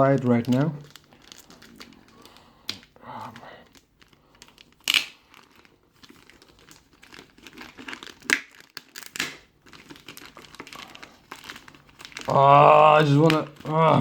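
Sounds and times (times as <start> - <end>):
plastic packaging crinkling: 0.0 - 14.0.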